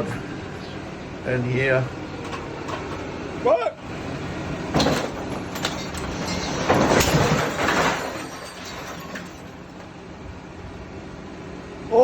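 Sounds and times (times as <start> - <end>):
heavy metal clanking and scraping: 4.7 - 9.9.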